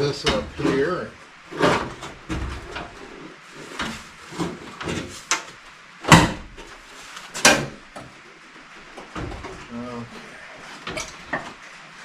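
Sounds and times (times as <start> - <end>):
sheet metal knocks and clunks: 6.0 - 6.7.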